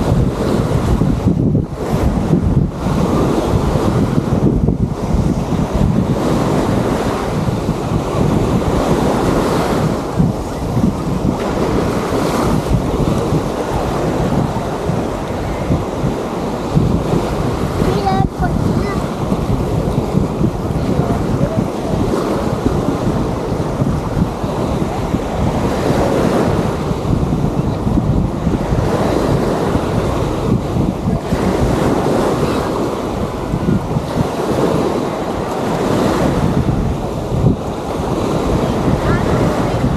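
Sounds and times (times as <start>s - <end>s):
surf washing on beach: 0.0s - 39.9s
wind buffeting microphone: 0.0s - 39.9s.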